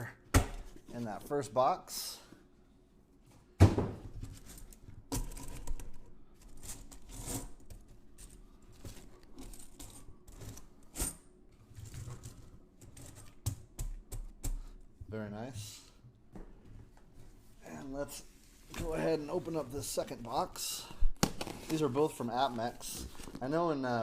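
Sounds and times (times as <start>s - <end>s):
rustling and crinkling: 4.2s - 11.0s, 21.4s - 23.7s.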